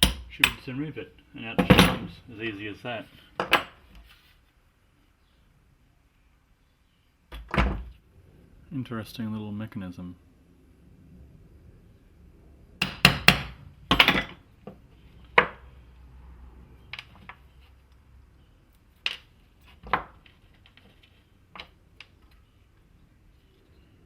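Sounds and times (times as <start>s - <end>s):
small metal parts knocking and clicking: 12.8s - 14.4s.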